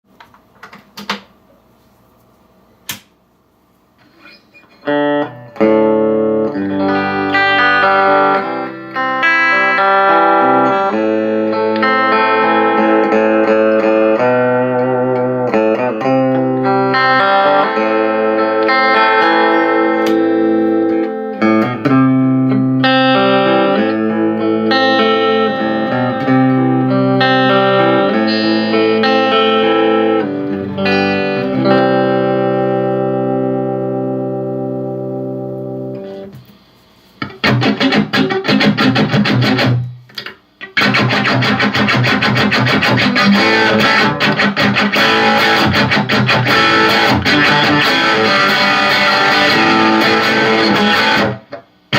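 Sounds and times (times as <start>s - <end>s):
faint amp hum: 0.1s - 51.9s
electric guitar chords and notes: 4.0s - 51.9s
amplifier clicks: 20.0s - 21.2s.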